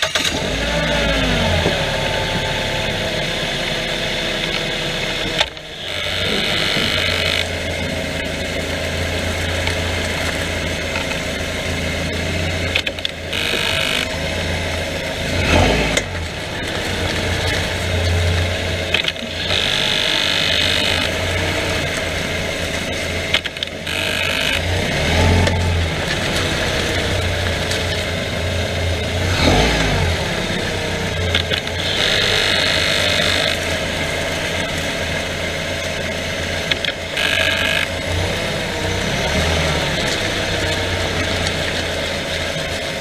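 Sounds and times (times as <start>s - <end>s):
car engine running: 0.0s - 43.0s
sharp clicks and pops: 5.3s - 7.7s, 16.8s - 21.3s, 23.3s - 28.1s, 31.2s - 33.8s, 36.6s - 38.0s.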